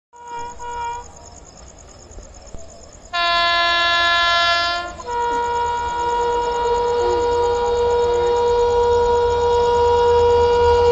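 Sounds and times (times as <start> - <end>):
locomotive horn: 0.1 - 1.2, 3.1 - 10.9.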